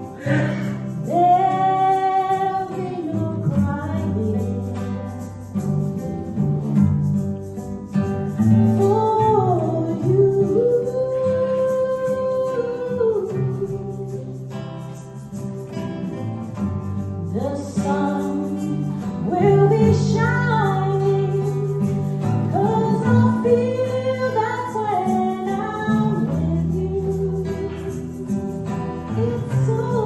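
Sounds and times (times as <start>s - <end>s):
woman singing: 0.0s - 5.6s, 8.6s - 15.1s, 17.1s - 30.0s
guitar accompaniment: 0.0s - 30.0s.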